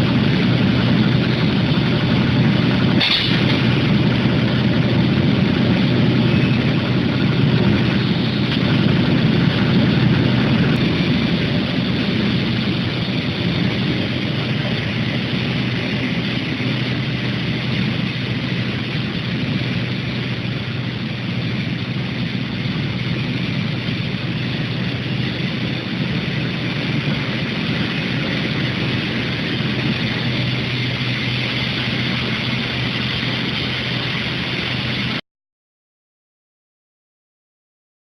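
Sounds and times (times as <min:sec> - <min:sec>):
machine low hum: 0:00.0 - 0:35.2.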